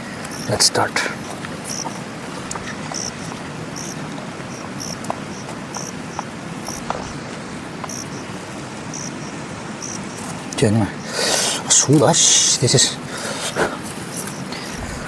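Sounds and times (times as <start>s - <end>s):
faint ticks: 0.0s - 8.3s, 13.4s - 15.0s
insect chirps: 0.0s - 15.0s
river rushing: 0.0s - 15.0s.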